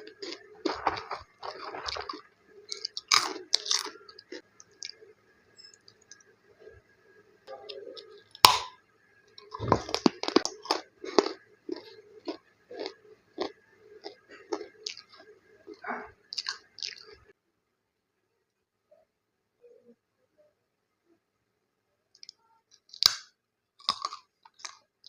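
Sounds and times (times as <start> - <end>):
person crunching crispy snack: 0.0 - 5.0, 9.4 - 17.2, 22.8 - 24.9.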